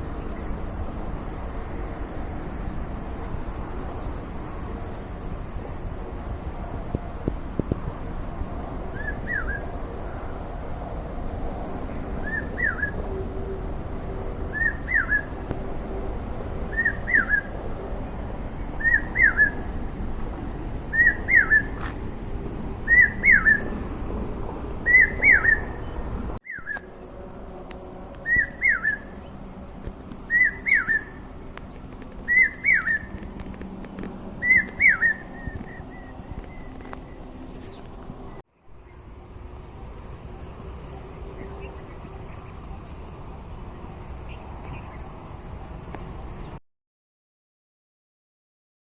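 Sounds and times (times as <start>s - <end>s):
bird whistled call: 8.9s - 9.7s, 12.2s - 13.0s, 14.5s - 15.4s, 16.7s - 17.5s, 18.8s - 19.7s, 20.9s - 21.8s, 22.8s - 23.7s, 24.8s - 26.9s, 28.2s - 29.2s, 30.3s - 31.2s, 32.3s - 33.1s, 34.4s - 37.8s.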